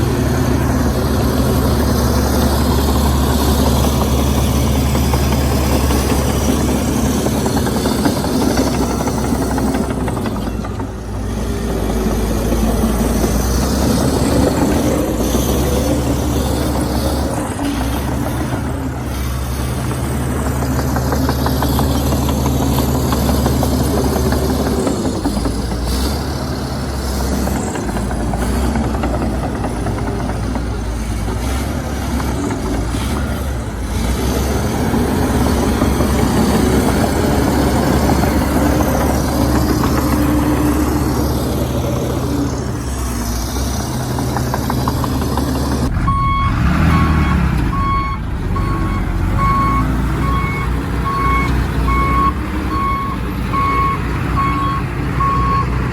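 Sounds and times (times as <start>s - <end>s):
bulldozer diesel engine: 0.0s - 55.9s
reversing alarm beeping: 46.0s - 55.8s.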